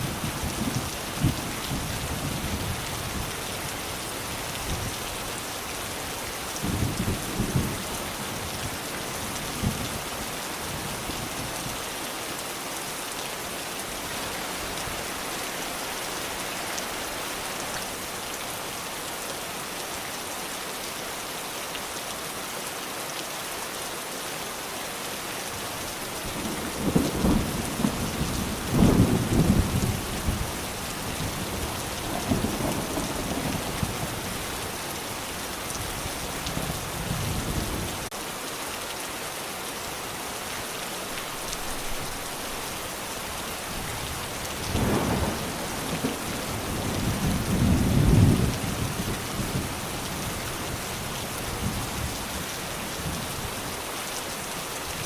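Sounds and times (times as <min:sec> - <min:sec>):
steady rain falling: 0:00.0 - 0:55.0
thunder rumbling: 0:44.6 - 0:49.7.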